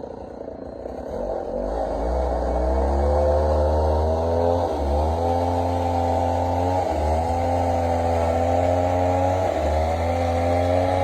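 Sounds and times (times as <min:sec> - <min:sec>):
chainsaw engine running: 0:00.0 - 0:11.0.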